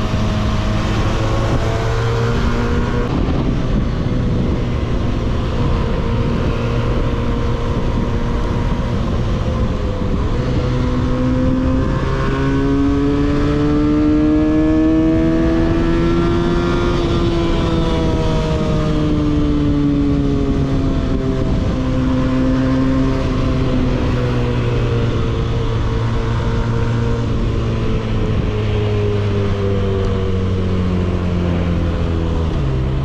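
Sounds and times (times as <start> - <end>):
steady rushing noise: 0.0 - 14.2
motorcycle engine revving: 0.0 - 33.0.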